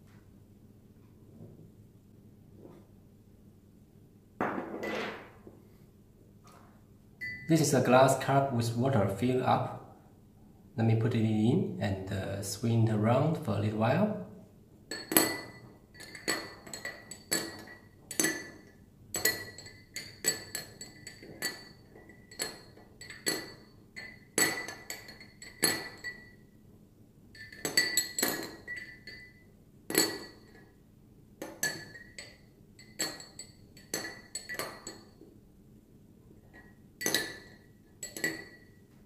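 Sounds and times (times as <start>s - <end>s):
metal clinking against glass: 14.9s - 26.4s, 27.4s - 30.7s, 31.4s - 35.2s, 36.5s - 38.9s.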